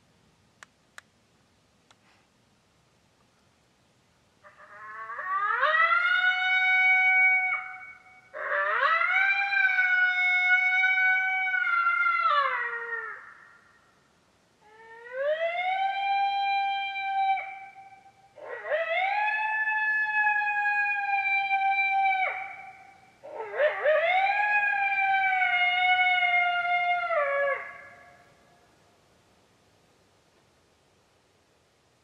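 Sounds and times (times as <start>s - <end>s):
coyote howls: 4.4s - 13.9s, 14.6s - 28.4s.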